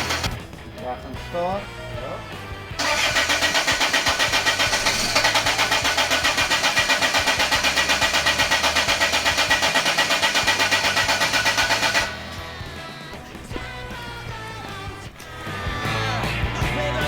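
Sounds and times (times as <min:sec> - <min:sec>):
diesel engine cranking: 0:00.0 - 0:00.6, 0:02.8 - 0:12.4.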